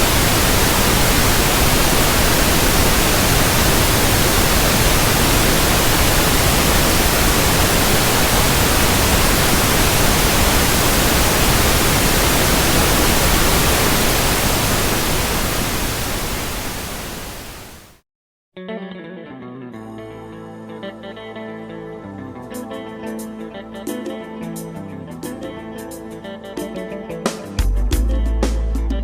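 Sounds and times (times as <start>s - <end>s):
pink noise hiss: 0.0s - 18.0s.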